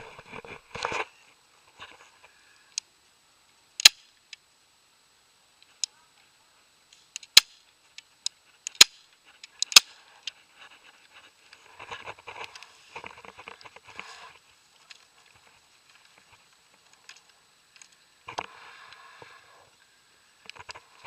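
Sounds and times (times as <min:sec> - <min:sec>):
rustling and clatter: 0:00.0 - 0:02.4, 0:07.8 - 0:18.6
faint clicks: 0:14.8 - 0:19.3.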